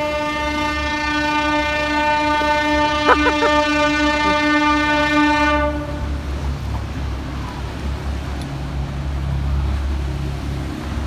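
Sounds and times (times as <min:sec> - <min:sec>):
wind: 0:00.0 - 0:11.0
water noise: 0:03.1 - 0:03.6.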